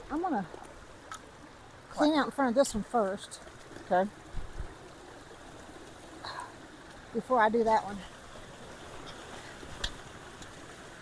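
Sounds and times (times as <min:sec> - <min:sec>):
water rushing through culvert: 0:00.0 - 0:11.0.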